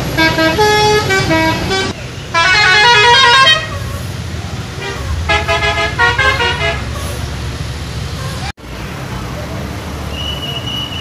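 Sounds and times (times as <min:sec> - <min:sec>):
musical bus horns playing tunes: 0:00.0 - 0:04.1, 0:04.7 - 0:07.2.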